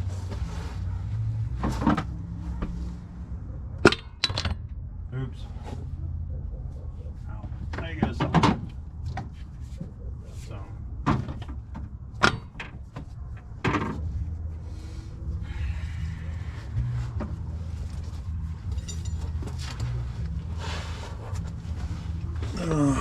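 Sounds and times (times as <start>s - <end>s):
steady low hum: 13.1s - 23.0s.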